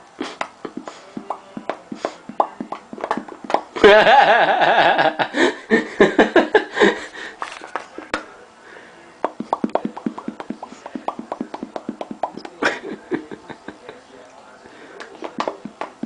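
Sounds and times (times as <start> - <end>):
mouth popping: 0.2 - 3.8, 9.2 - 12.6, 15.0 - 16.0.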